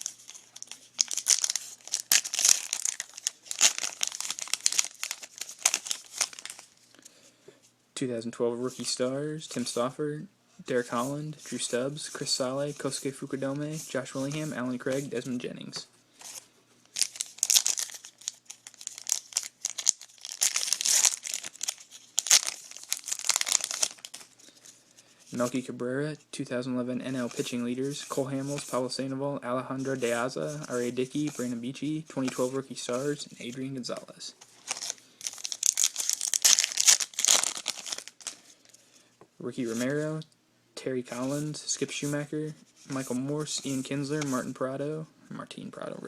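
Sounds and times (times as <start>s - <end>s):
wrapper crinkling torn open: 0.0s - 6.8s, 16.9s - 24.3s, 34.5s - 38.4s.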